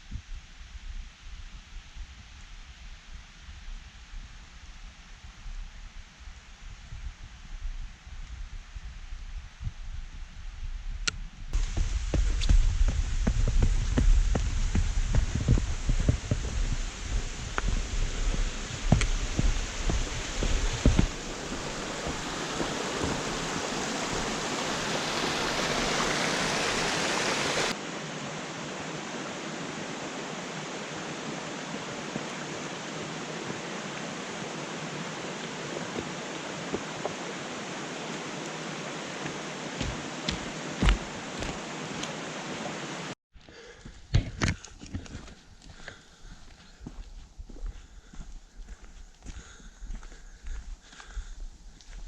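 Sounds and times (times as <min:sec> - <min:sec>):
heavy footsteps on a trail: 0:11.5 - 0:26.0, 0:39.2 - 0:42.1, 0:43.3 - 0:52.0
rushing hiss of outdoor noise: 0:11.6 - 0:43.2.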